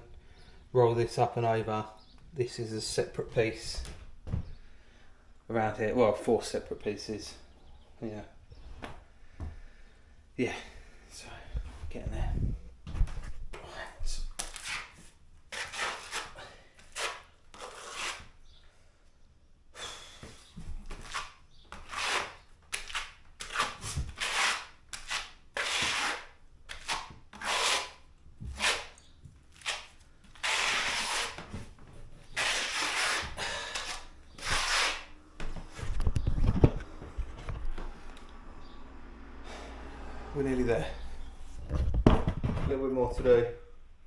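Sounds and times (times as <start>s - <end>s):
hand tool rubbing on wall liner: 14.4s - 18.4s, 20.4s - 29.0s, 29.6s - 35.1s.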